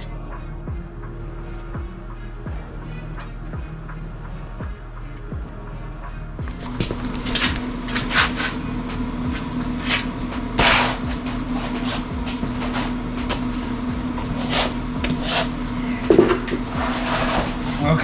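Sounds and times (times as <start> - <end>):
steady low hum: 0.0 - 18.0
knocks and clatters of work: 6.4 - 18.0
scraping rustle: 6.5 - 18.0.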